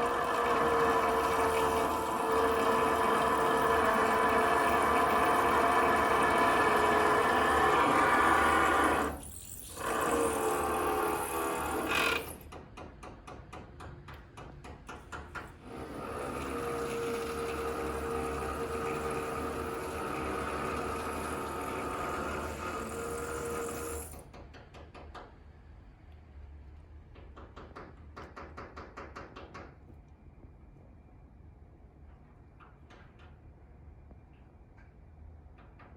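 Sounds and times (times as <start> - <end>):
power tool rattling and droning: 0.0 - 12.4, 15.6 - 24.2.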